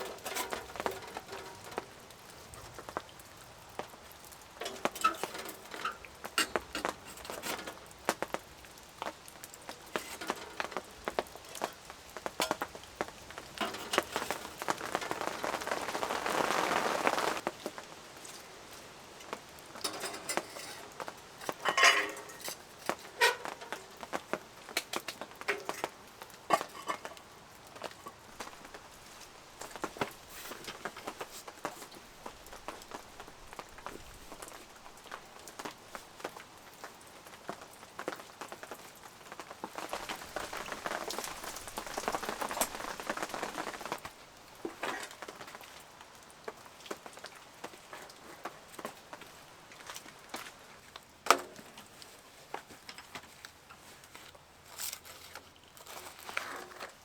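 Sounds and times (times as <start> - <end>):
camping gear clattering: 0.0 - 17.8, 19.2 - 36.4, 39.4 - 45.7, 47.8 - 57.0
steady rain: 0.0 - 57.0.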